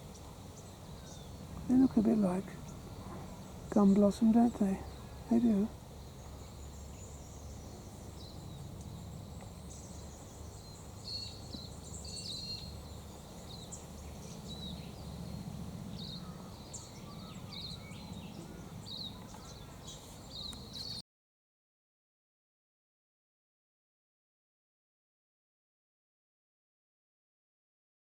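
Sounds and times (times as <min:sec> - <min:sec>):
small birds chirping: 0:00.0 - 0:21.0.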